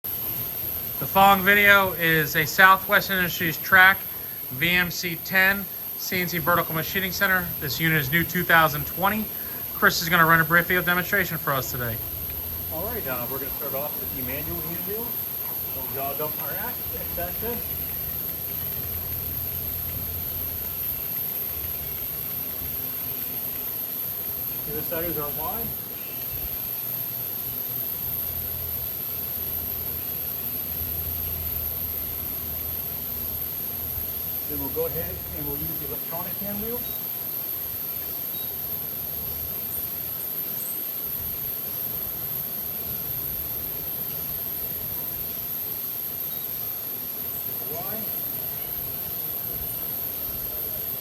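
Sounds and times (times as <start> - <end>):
high-pitched whine: 0.0 - 51.0
machine table motor humming: 0.0 - 51.0
steady hiss: 0.0 - 51.0.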